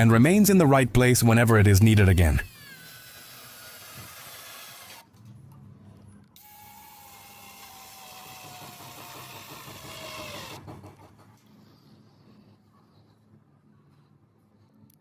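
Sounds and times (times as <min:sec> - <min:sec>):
small motor whirring: 0:02.5 - 0:05.2, 0:06.4 - 0:11.9.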